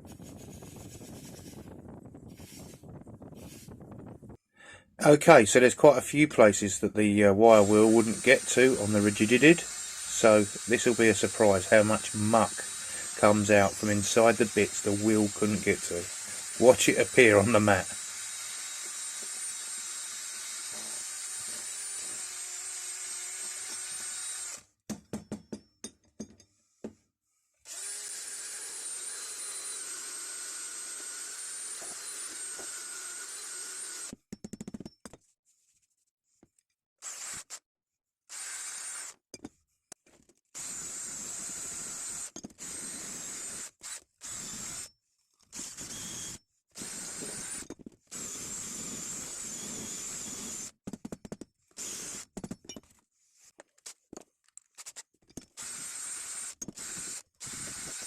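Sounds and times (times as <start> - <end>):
small power tool whining: 0.1 - 1.7, 2.3 - 3.8, 7.5 - 24.7, 27.6 - 34.2, 38.3 - 39.2, 40.6 - 50.8, 55.6 - 58.0.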